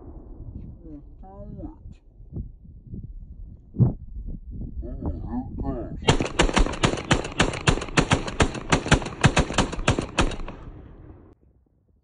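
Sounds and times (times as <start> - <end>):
rifle firing rapid shots: 6.0 - 11.2.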